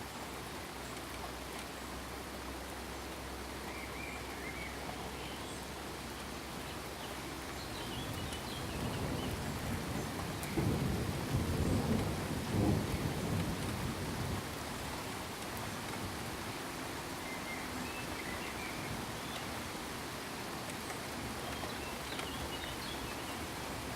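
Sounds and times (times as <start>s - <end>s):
steady rain falling: 0.0s - 23.9s
rolling thunder: 8.8s - 14.6s.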